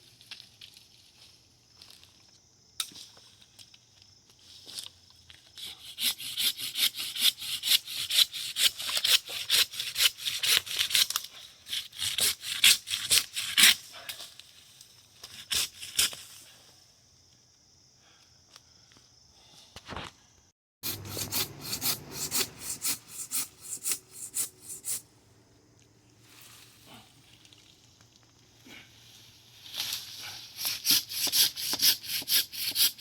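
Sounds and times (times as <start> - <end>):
hand saw cutting wood: 5.6 - 13.8, 20.8 - 25.0, 30.6 - 33.0.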